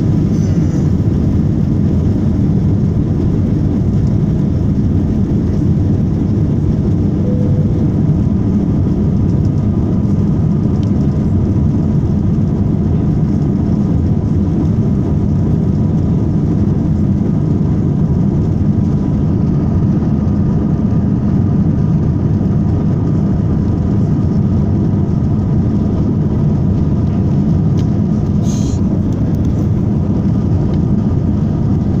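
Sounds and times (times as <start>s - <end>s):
jet engine rumble in cabin: 0.0s - 32.0s
faint steady tones: 7.2s - 8.4s.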